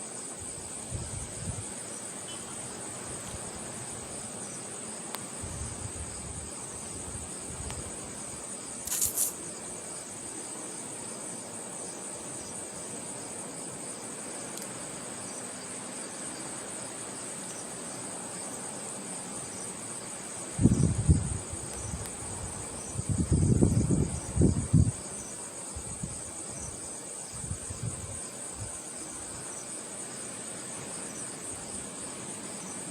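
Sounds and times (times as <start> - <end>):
crickets chirping: 0.0 - 32.9
brief rustle: 8.8 - 9.4.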